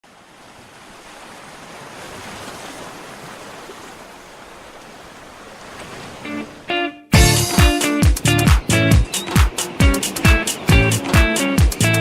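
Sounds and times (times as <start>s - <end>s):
sea waves washing onto beach: 0.0s - 6.8s.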